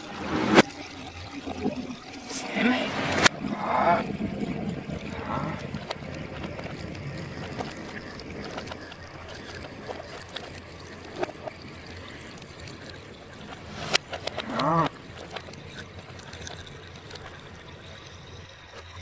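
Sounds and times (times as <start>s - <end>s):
water sloshing and gurgling: 0.0s - 19.0s.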